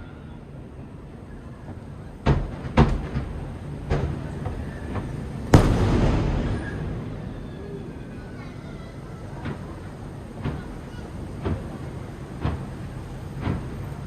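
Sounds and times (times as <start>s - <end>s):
fireworks rumble: 1.6s - 14.0s
fireworks bangs: 5.3s - 10.4s.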